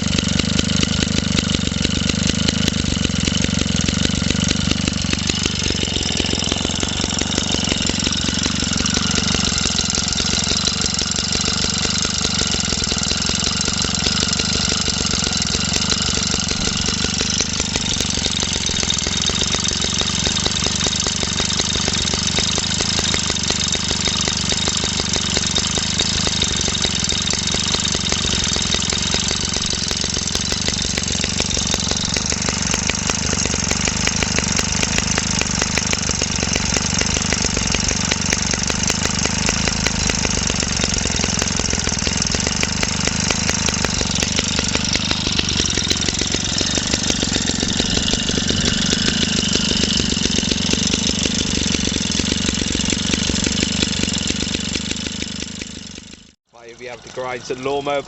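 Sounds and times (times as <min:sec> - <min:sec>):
stationary engine running: 0:00.0 - 0:58.0.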